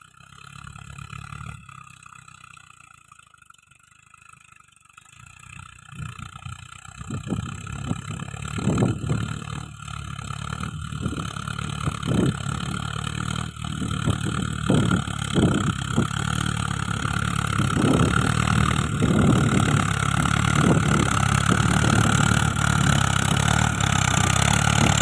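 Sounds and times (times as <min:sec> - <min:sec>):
tractor engine droning: 0:00.0 - 0:25.0.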